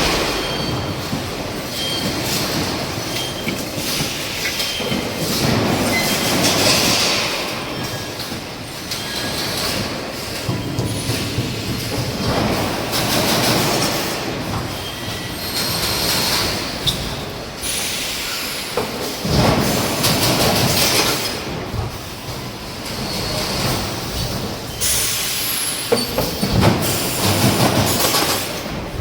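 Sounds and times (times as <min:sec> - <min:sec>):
industrial machinery rumbling: 0:00.0 - 0:07.5.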